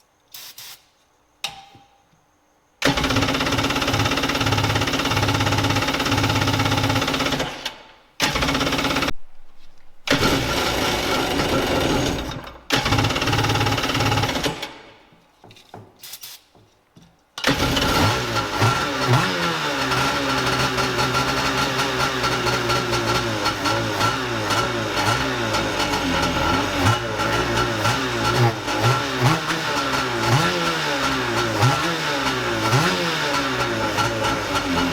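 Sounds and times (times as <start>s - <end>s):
jet ski engine revving: 17.5s - 34.9s.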